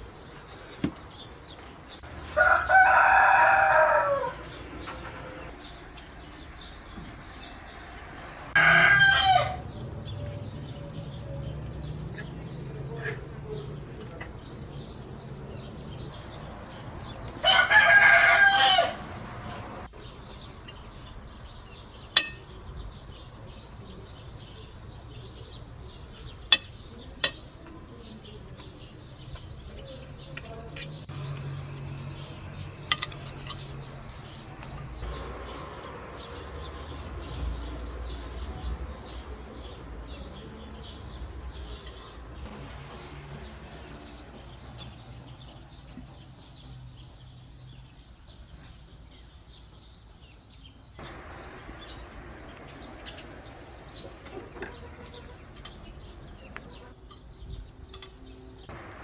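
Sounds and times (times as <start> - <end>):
quiet outdoor background: 0.0 - 59.0
rooster crowing: 2.2 - 4.7, 8.6 - 9.7, 17.4 - 19.7.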